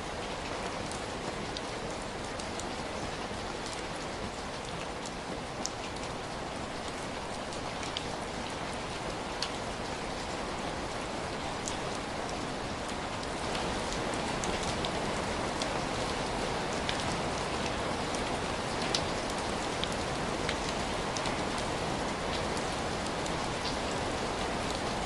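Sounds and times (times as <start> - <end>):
steady rain falling: 0.0 - 25.0
raindrop ticks: 3.6 - 6.2, 16.8 - 21.7.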